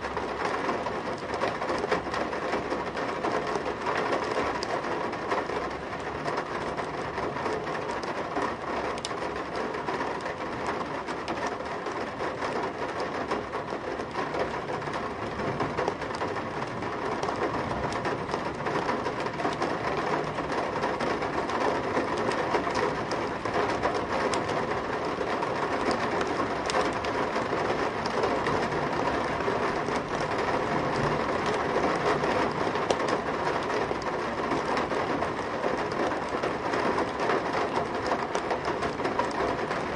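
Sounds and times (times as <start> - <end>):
heavy rain on metal sill: 0.0 - 39.9.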